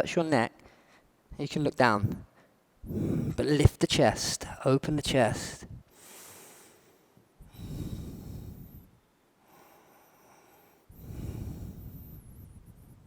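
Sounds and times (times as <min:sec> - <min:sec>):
person breathing deeply: 0:02.4 - 0:03.4, 0:05.7 - 0:12.8.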